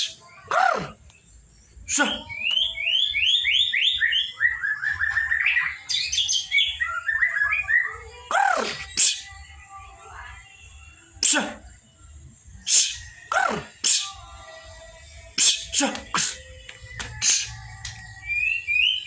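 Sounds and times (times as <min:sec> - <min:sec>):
bird chirping song: 0:00.0 - 0:19.0
bird call rising and falling: 0:01.9 - 0:09.3, 0:15.4 - 0:19.0.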